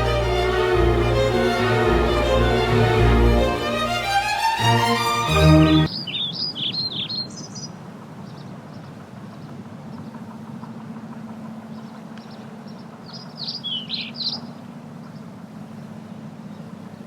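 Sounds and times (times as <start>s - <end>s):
low outdoor hum: 0.0s - 5.8s
instrumental music: 0.0s - 5.9s
small birds chirping: 5.8s - 10.2s, 11.7s - 15.3s.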